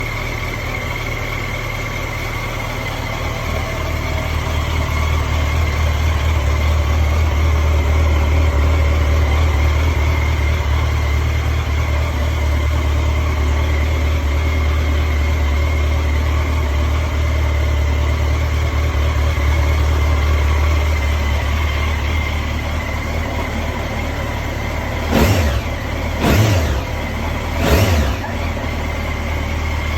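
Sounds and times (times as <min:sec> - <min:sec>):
motorcycle engine idling: 0:00.0 - 0:29.9
engine revving: 0:23.2 - 0:29.9.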